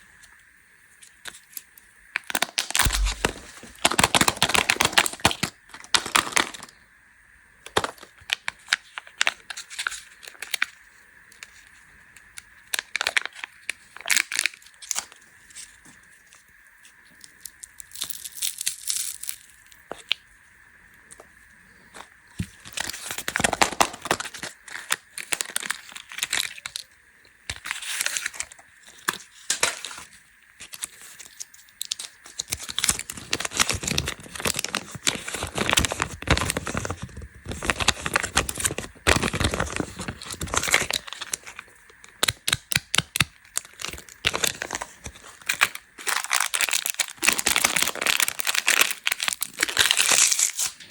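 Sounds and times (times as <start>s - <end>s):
plastic wrappers crinkling and tearing: 2.2s - 6.7s, 7.7s - 10.8s, 11.4s - 20.2s, 22.5s - 26.9s, 27.5s - 50.9s.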